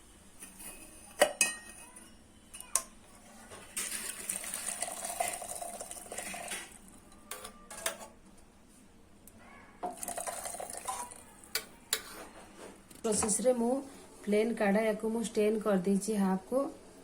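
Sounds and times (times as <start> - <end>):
metal utensils clinking on a pot: 0.4 - 2.9, 6.1 - 8.1.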